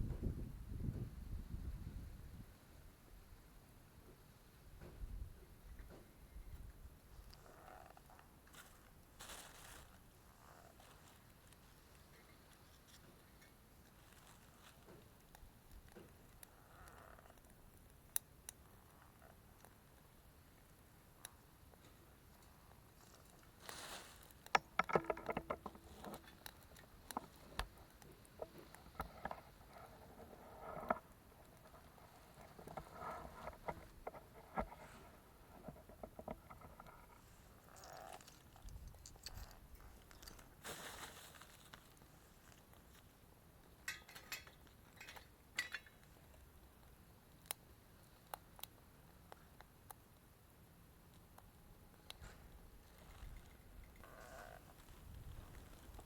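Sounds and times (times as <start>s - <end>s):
rustles: 4.8s - 48.7s, 51.1s - 56.0s
wooden sticks knocking and clattering: 24.3s - 29.6s, 43.8s - 46.1s.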